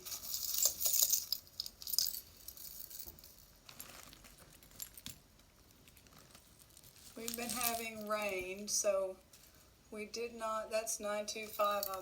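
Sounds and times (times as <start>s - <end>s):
jewelry clicking and jingling: 0.0s - 8.6s, 11.4s - 12.0s.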